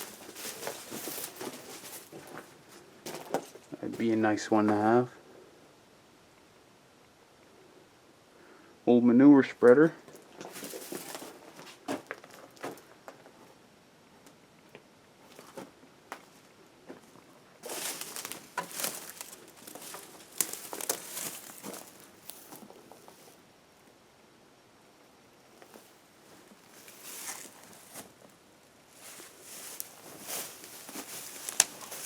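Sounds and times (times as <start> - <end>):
rustling: 0.0 - 3.8, 10.0 - 13.5, 17.6 - 23.4, 25.6 - 32.0
footsteps: 0.0 - 4.2, 10.1 - 12.9, 16.9 - 23.3, 25.6 - 28.3, 28.9 - 32.0.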